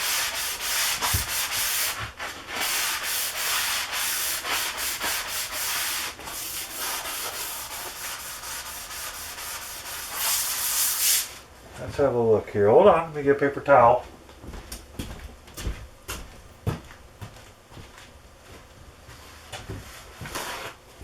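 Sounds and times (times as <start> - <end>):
sandpaper scouring cast iron: 0.0 - 11.4.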